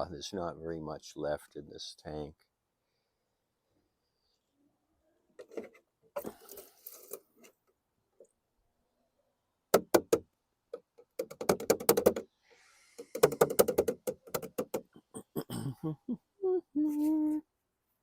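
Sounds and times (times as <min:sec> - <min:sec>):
plastic clicking and knocking: 0:09.7 - 0:12.3, 0:13.0 - 0:15.0.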